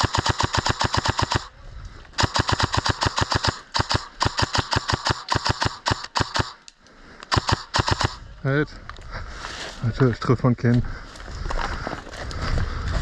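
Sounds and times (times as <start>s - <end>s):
airsoft gun firing bursts: 0.0s - 1.5s, 2.2s - 6.6s, 7.3s - 8.2s.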